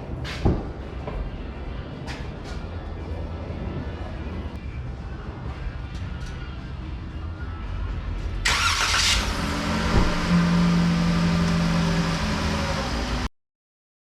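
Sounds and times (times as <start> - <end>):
vehicle engine starting and running: 8.2 - 13.3.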